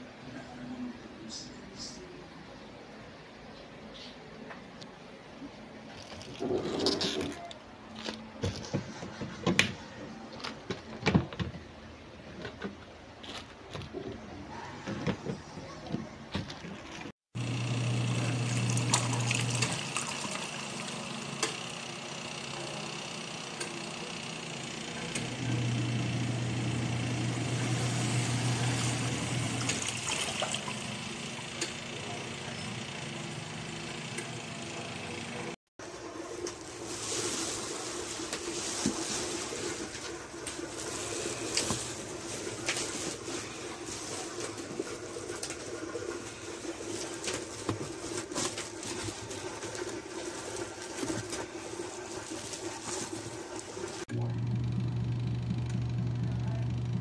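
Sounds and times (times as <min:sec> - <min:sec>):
washing machine motor humming: 0:17.0 - 0:57.0.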